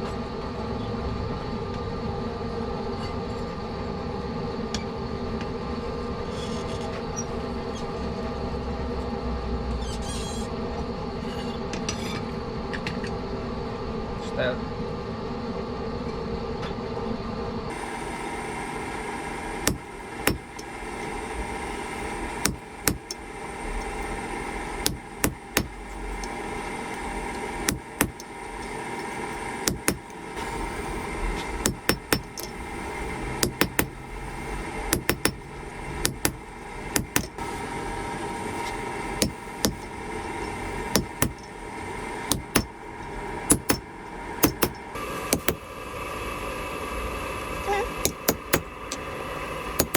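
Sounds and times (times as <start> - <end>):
steady background noise: 17.7 - 46.1
hammer striking metal on anvil: 19.6 - 21.2, 22.4 - 24.1, 24.8 - 30.9, 31.6 - 34.1, 34.9 - 37.4, 39.2 - 40.0, 41.0 - 41.6, 42.3 - 42.8, 43.5 - 45.6, 48.0 - 49.1.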